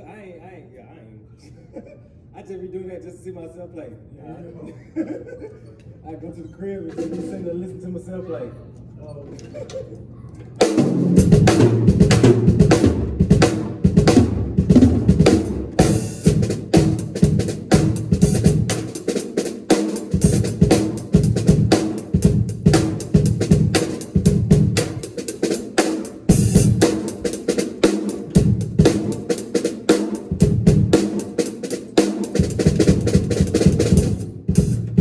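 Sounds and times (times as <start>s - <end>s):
drum kit playing fast groove: 6.9s - 7.5s, 10.6s - 35.0s.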